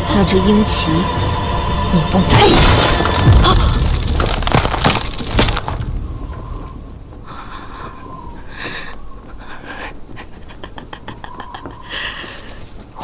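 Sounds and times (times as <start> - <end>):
crashing breaking impacts: 2.3 - 6.8.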